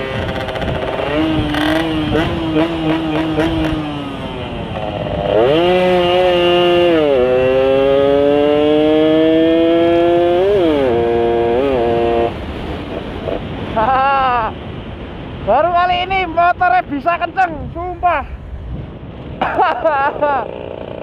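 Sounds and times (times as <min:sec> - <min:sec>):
two-stroke engine revving: 0:00.0 - 0:13.7, 0:20.0 - 0:21.0.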